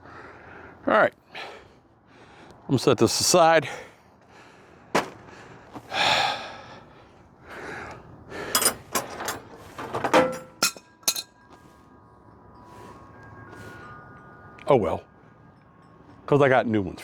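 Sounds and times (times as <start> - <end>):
metal tools handled: 8.5 - 11.5
wind chimes ringing: 10.3 - 17.0.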